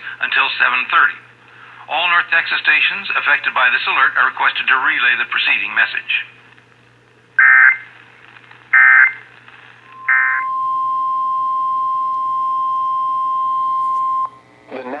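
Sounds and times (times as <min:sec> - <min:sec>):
single-pitch warning alarm tone: 0:07.4 - 0:07.8, 0:08.8 - 0:09.2, 0:09.9 - 0:14.4
digital data tone bursts: 0:07.4 - 0:07.9, 0:08.8 - 0:09.2, 0:09.9 - 0:14.3.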